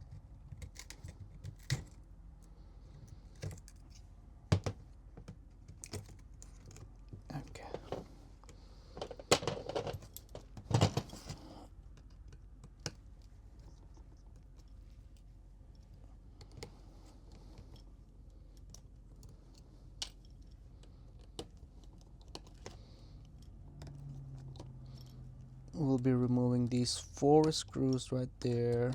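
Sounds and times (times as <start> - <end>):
clatter of parts: 8.9 - 13.9.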